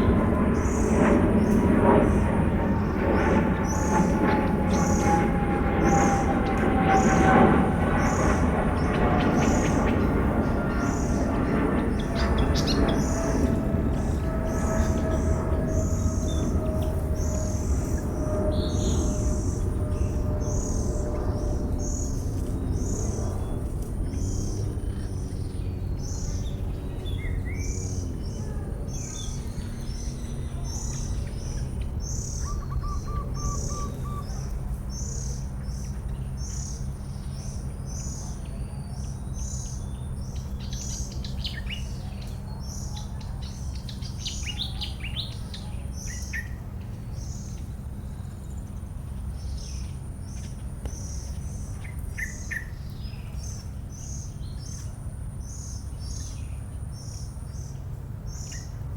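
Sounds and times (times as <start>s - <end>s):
birds chirping: 0.0s - 47.8s.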